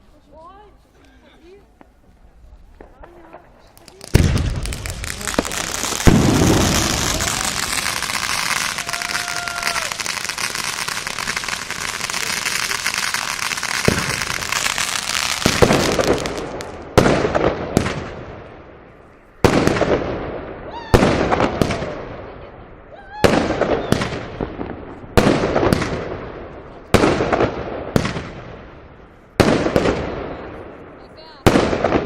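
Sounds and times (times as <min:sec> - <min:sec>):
fireworks crackling: 0:01.8 - 0:32.0
fireworks bangs: 0:02.7 - 0:18.6, 0:19.4 - 0:22.4, 0:23.2 - 0:28.8, 0:29.4 - 0:32.0.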